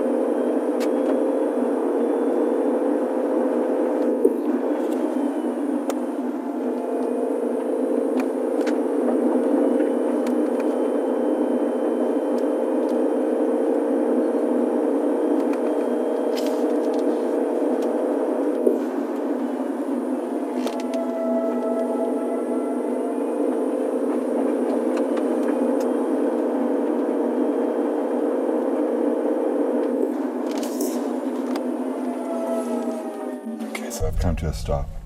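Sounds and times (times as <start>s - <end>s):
road and drivetrain noise: 0.0s - 35.0s
steady tone: 33.5s - 35.0s.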